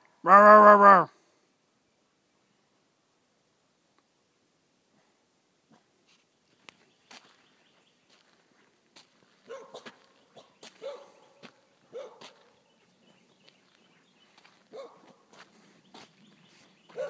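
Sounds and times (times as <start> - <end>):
dog barking faintly: 9.4 - 12.6, 14.6 - 15.4.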